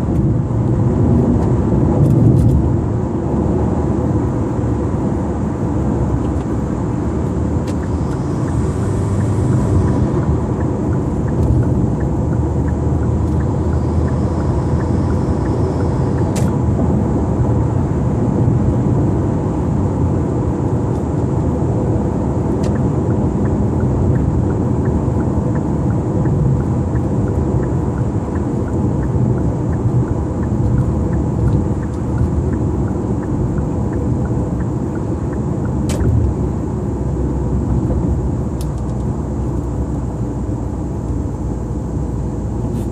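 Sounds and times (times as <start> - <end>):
car engine running: 0.0 - 42.9.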